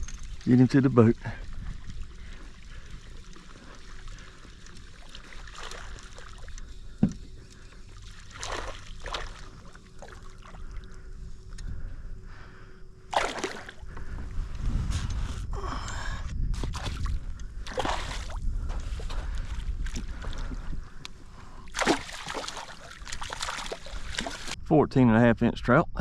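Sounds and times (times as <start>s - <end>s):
wind rumbling on microphone: 0.0s - 4.3s, 13.8s - 21.7s
water splashing against kayak: 1.2s - 11.0s, 13.1s - 14.2s, 16.6s - 24.6s.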